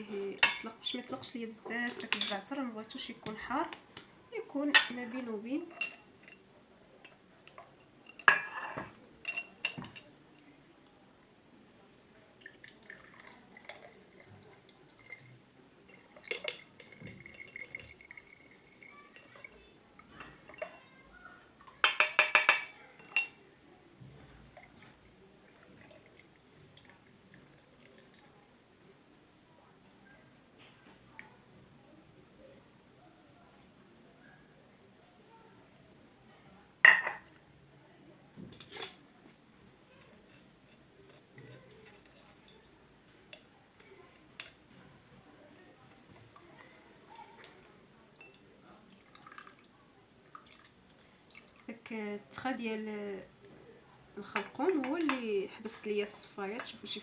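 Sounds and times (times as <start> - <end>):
utensils clinking against glassware: 0.4 - 0.8, 1.9 - 2.6, 5.6 - 10.1, 15.0 - 21.0, 21.8 - 23.4, 48.2 - 48.5.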